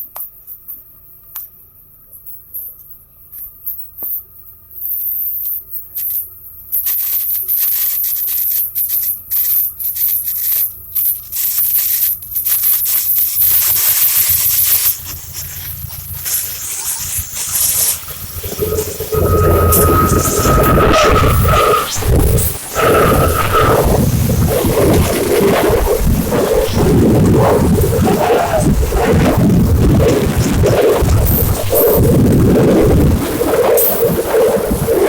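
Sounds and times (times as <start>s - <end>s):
storm wind hissing in gusts: 15.0s - 35.0s.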